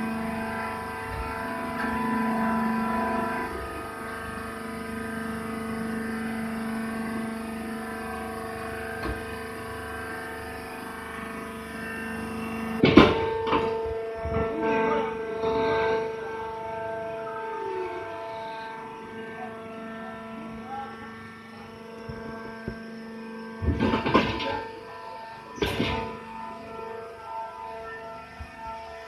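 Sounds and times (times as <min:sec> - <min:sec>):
baler motor humming: 0:00.0 - 0:29.0
knocks and clatters: 0:12.8 - 0:14.6, 0:23.6 - 0:24.7, 0:25.6 - 0:26.2.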